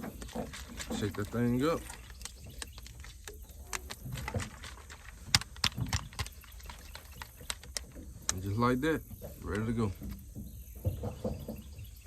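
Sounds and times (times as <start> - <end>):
liquid sloshing in bottle: 0.0 - 8.5.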